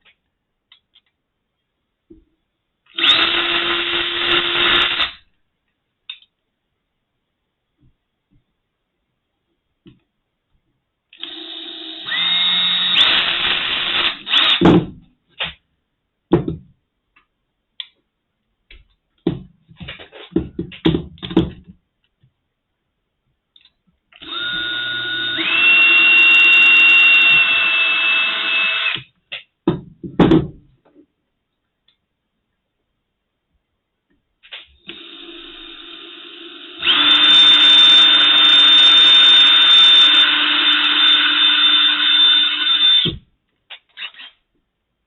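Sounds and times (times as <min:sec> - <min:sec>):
electric drill whining: 0:03.0 - 0:05.2, 0:11.2 - 0:14.6, 0:24.2 - 0:29.0, 0:34.9 - 0:43.2.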